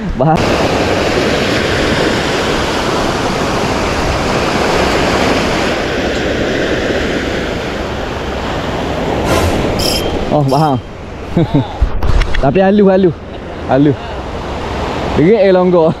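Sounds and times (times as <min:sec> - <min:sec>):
wind buffeting microphone: 0:00.0 - 0:13.6
sea surf washing on shore: 0:00.0 - 0:16.0.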